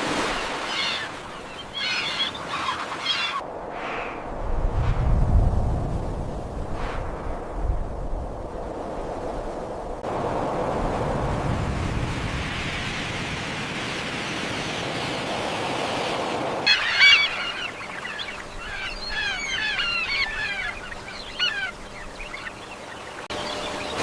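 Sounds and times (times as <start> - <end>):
birds calling: 0.1 - 3.4, 16.7 - 24.0.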